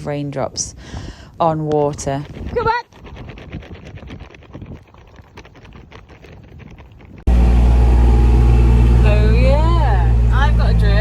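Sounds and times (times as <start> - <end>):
vehicle engine running: 7.3 - 11.0.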